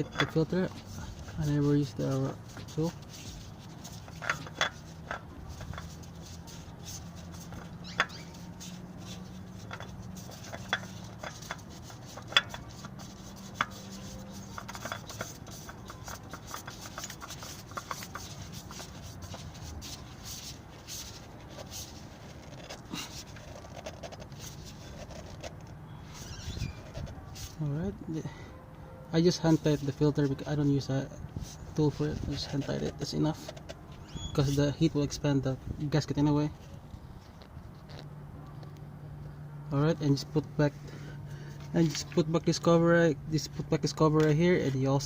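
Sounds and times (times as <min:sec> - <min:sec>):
hands gripping oil filter: 0:00.0 - 0:27.6.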